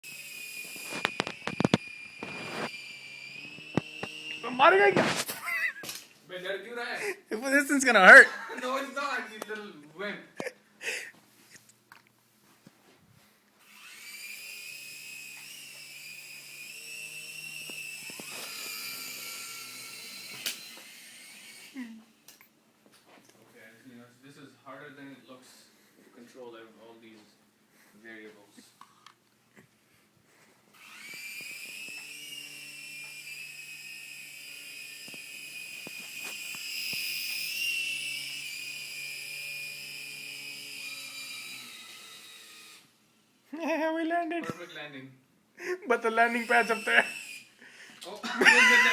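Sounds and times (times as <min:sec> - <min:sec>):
rc helicopter motor whine: 0:00.0 - 0:06.0, 0:13.6 - 0:22.2, 0:30.7 - 0:43.3, 0:46.2 - 0:47.6, 0:48.4 - 0:48.9.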